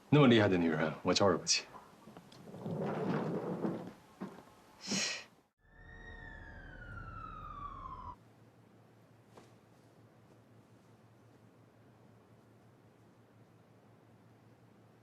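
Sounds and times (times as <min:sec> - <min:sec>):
downward gliding tone: 0:05.6 - 0:08.2.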